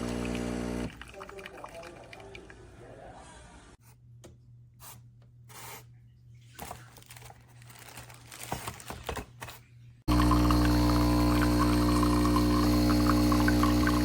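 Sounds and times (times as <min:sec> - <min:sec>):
espresso machine pump buzzing: 0:00.0 - 0:00.9, 0:10.1 - 0:14.0
things rustling and clicking: 0:06.5 - 0:09.7.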